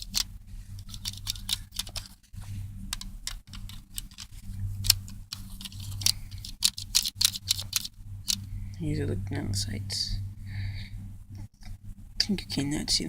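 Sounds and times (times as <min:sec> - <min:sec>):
plastic bricks clicking: 0:00.0 - 0:02.2, 0:02.9 - 0:08.4
low hum: 0:00.0 - 0:13.0.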